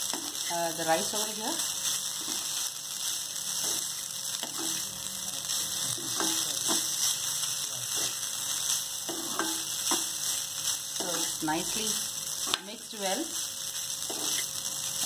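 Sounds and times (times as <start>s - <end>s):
rice sizzling in a pan: 0.0s - 15.0s
spatula scraping a pan: 3.6s - 4.8s, 7.9s - 11.4s, 14.0s - 14.6s.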